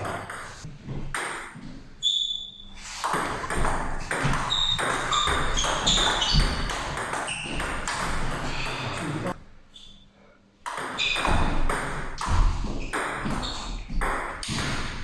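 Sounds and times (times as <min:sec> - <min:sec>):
table tennis ball pings: 0:03.0 - 0:09.3, 0:10.7 - 0:14.9.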